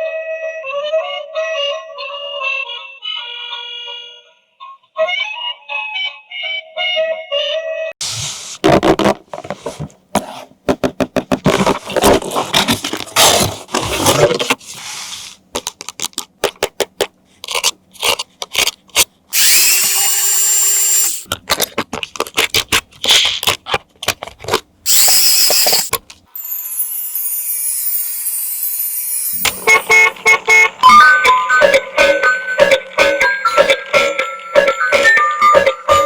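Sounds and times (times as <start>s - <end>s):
small motor whirring: 19.3s - 21.3s, 24.9s - 30.0s
falling high tone: 24.9s - 30.2s.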